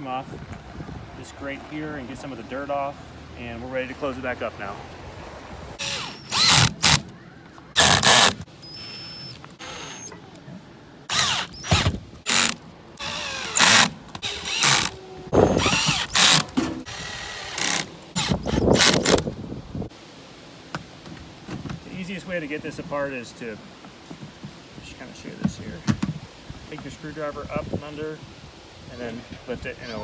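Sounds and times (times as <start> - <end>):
mechanical noise and clatter: 5.8 - 7.1, 7.8 - 8.5, 11.1 - 19.4.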